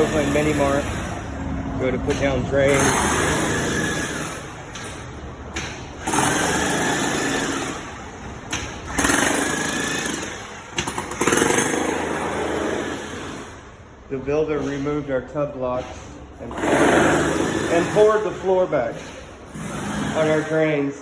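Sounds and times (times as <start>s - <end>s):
jackhammer chiseling concrete: 0.0s - 1.2s, 2.0s - 5.0s, 6.0s - 8.1s, 8.8s - 13.6s, 16.4s - 20.9s.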